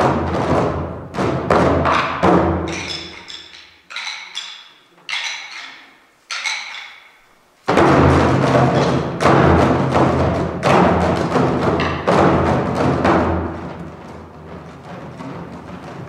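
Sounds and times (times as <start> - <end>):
drums beaten in booming rhythm: 0.0 - 3.4, 7.7 - 16.0.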